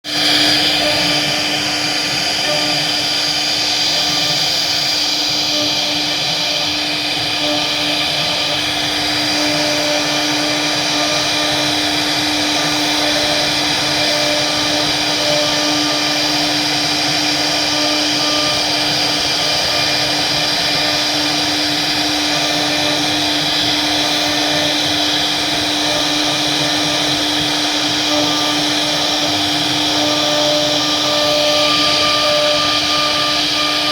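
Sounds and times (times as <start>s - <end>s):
rushing cutting noise: 0.0s - 33.9s
spindle whine: 0.0s - 33.9s
wood router carving: 0.0s - 33.9s.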